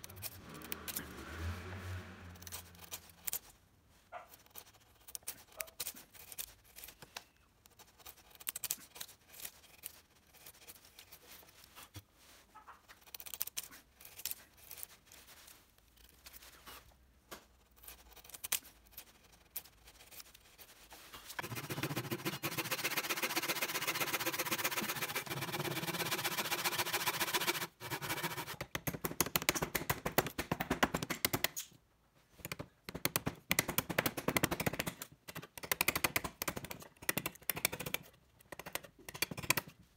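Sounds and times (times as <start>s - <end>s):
hand tool tapping and scraping wood: 21.3s - 31.7s, 32.3s - 39.8s
rapid cutting strokes on wood: 21.4s - 28.7s.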